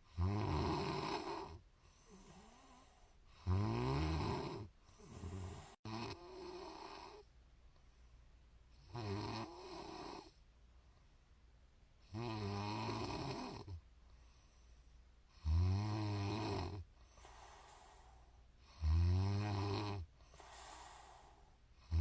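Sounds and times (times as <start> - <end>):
woman snoring: 0.1 - 7.2, 8.9 - 10.4, 12.1 - 13.8, 15.4 - 22.0.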